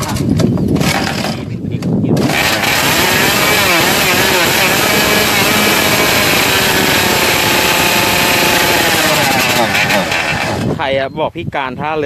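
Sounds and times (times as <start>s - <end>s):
buzzing two-stroke boat engine: 0.8s - 1.5s, 2.2s - 10.8s.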